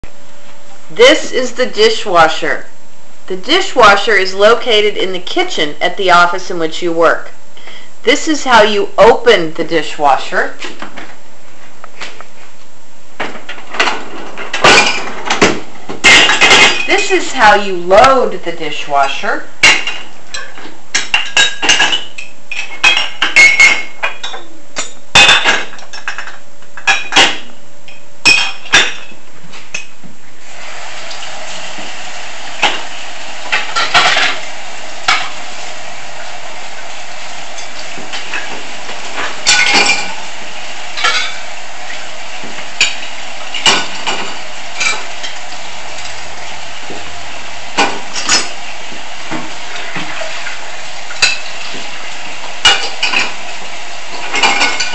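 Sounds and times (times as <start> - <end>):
dishes and cutlery clinking: 13.2 - 17.1, 19.6 - 29.9, 39.2 - 40.2, 54.3 - 54.9
water running with a hiss: 29.6 - 54.9.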